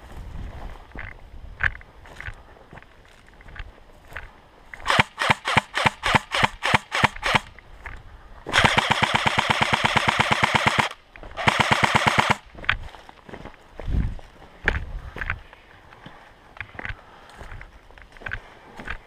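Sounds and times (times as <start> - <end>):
airsoft gun full-auto burst: 4.8 - 7.5, 8.5 - 12.4
airsoft gun single shots: 4.8 - 7.5.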